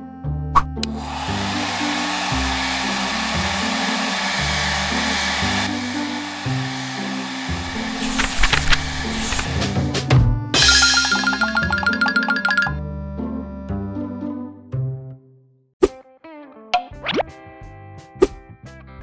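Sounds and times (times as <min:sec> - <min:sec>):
background music with bass: 0:00.0 - 0:01.0
rushing blowing noise: 0:01.0 - 0:09.6.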